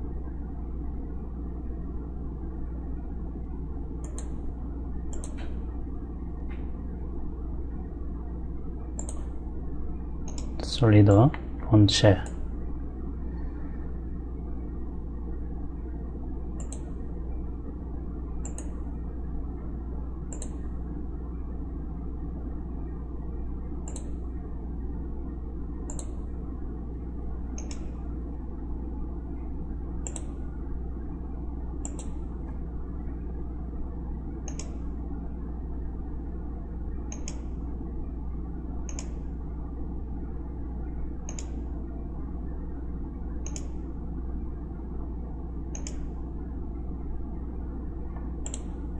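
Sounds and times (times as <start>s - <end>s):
steady low hum: 0.0s - 48.9s
computer mouse clicking: 4.0s - 4.4s, 5.1s - 5.6s, 8.9s - 9.4s, 10.2s - 10.6s, 16.6s - 17.0s, 18.4s - 18.8s, 20.3s - 20.6s, 23.8s - 24.2s, 25.8s - 26.2s, 27.5s - 28.0s, 30.0s - 30.4s, 31.8s - 32.6s, 34.4s - 34.8s, 37.1s - 37.5s, 38.8s - 39.2s, 41.2s - 41.6s, 43.4s - 43.8s, 45.7s - 46.1s, 48.4s - 48.8s.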